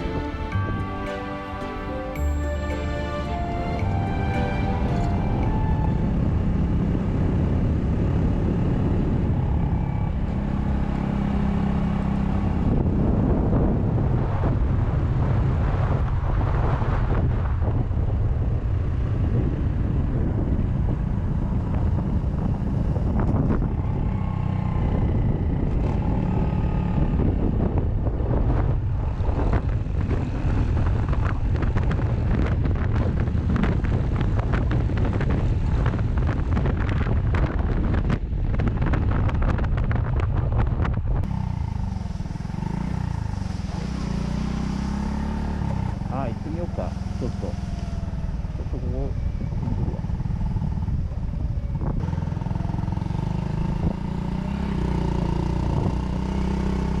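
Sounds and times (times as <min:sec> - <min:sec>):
wind buffeting microphone: 0:03.3 - 0:57.0
motorcycle engine running: 0:18.2 - 0:57.0.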